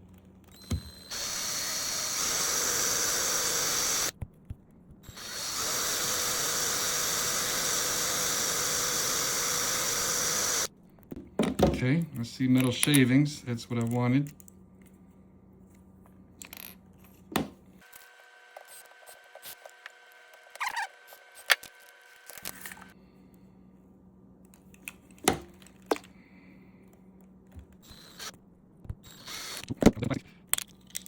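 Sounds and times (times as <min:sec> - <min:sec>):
drill bit clicks and scrapes: 0:05.0 - 0:10.7, 0:17.8 - 0:22.9, 0:27.8 - 0:28.4.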